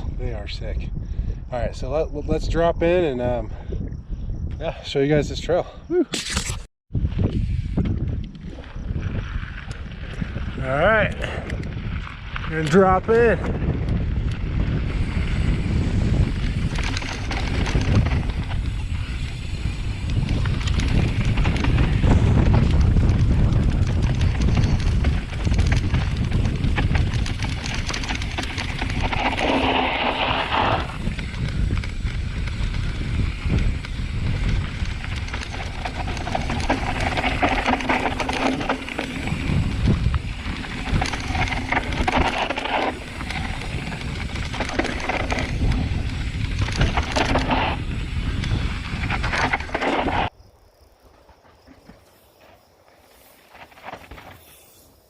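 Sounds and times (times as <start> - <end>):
wind rushing over microphone: 0.0 - 50.4
bike rattling over rocks: 7.6 - 50.3, 53.2 - 54.8
tyres crunching on dirt: 16.3 - 50.3.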